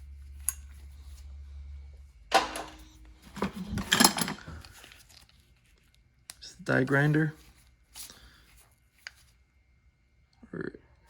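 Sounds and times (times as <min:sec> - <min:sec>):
metal tools clattering: 0:02.3 - 0:04.9.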